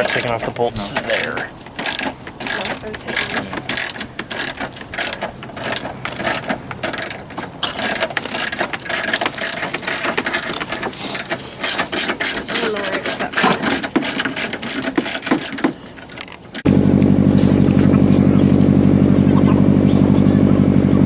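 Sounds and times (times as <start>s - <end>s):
ratchet wrench clicking: 1.0s - 15.7s.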